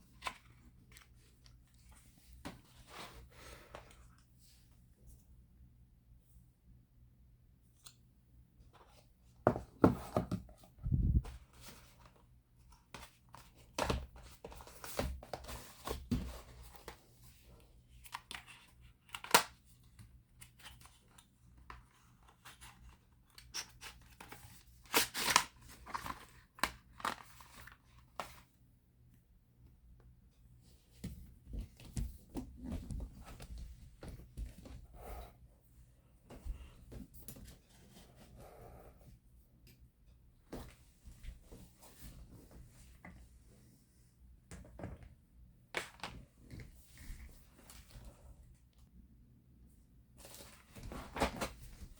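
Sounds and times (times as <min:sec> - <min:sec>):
packaging tearing and rustling: 0:23.6 - 0:27.3.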